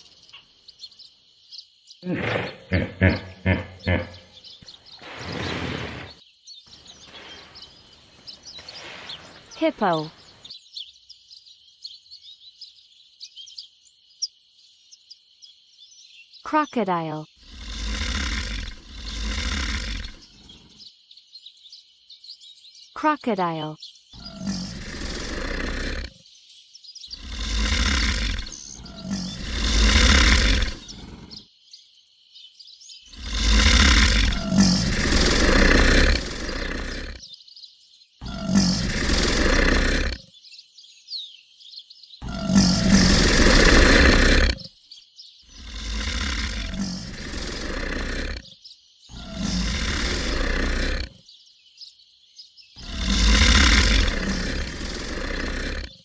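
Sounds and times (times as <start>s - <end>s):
crocodile bellowing: 2.0s - 4.4s, 16.8s - 20.7s, 24.2s - 26.2s, 27.2s - 31.4s, 33.1s - 37.2s, 38.2s - 40.3s, 42.2s - 44.7s, 45.5s - 48.5s, 49.1s - 51.2s, 52.8s - 56.0s.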